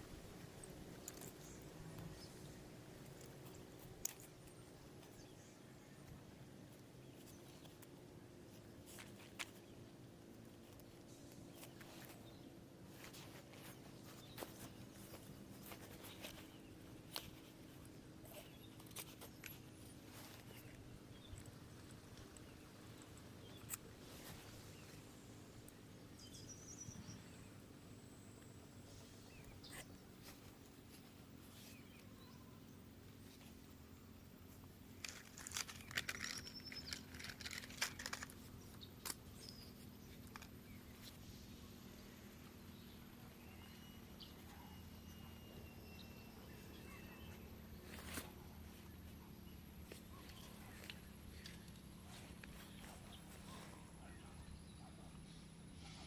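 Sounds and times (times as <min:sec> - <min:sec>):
faint low hum: 0:00.0 - 0:56.0
crackling and clicking: 0:34.6 - 0:41.2.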